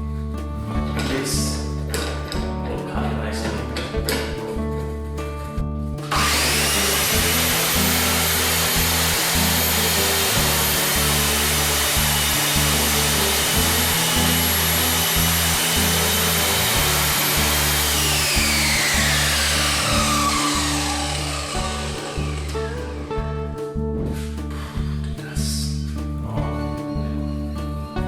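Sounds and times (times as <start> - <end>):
mitre saw cutting timber: 6.1 - 23.2
saw spinning down whine: 6.1 - 23.2.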